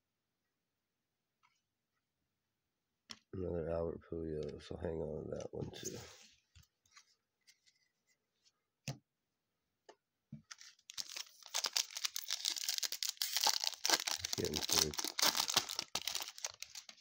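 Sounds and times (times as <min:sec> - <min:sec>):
foil wrapper tearing and crinkling: 0:10.5 - 0:17.0.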